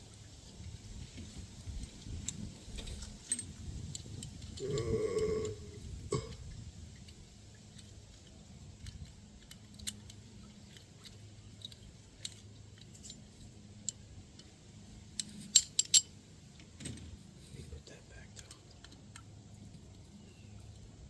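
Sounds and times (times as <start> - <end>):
metallic clicks of hand tools: 7.8 - 14.5, 15.1 - 16.2.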